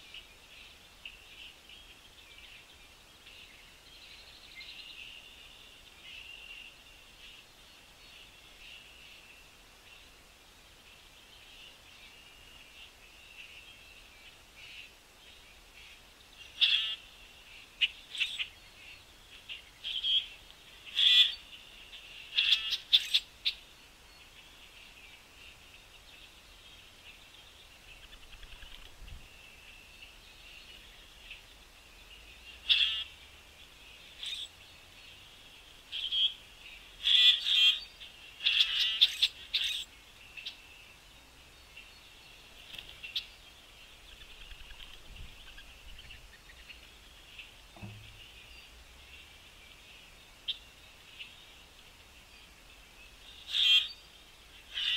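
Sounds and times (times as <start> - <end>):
small birds chirping: 0.0 - 54.9.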